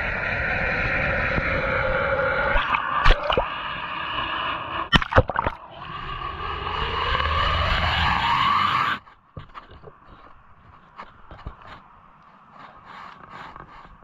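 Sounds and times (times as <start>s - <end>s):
motor whine rising in pitch: 0.0s - 4.9s, 5.6s - 9.0s.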